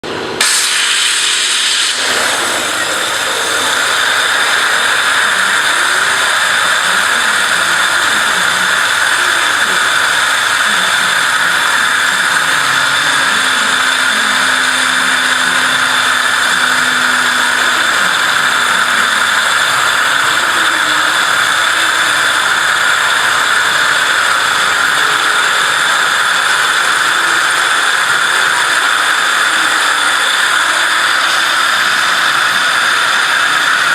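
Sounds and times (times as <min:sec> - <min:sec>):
high-pressure water jet hissing: 0:00.3 - 0:33.9
faint wavering hum: 0:02.5 - 0:27.8.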